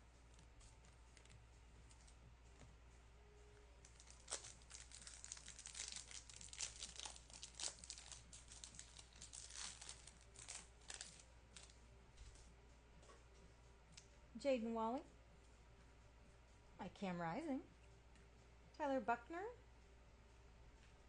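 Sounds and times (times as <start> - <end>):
wrapper tearing and crinkling: 3.8 - 11.7.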